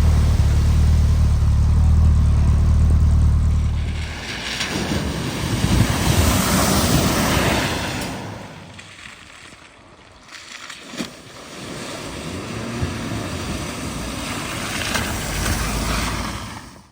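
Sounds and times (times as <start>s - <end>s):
vehicle engine noise: 0.0s - 9.9s, 11.5s - 16.9s
water rushing: 0.0s - 16.9s
wind buffeting microphone: 3.8s - 9.1s.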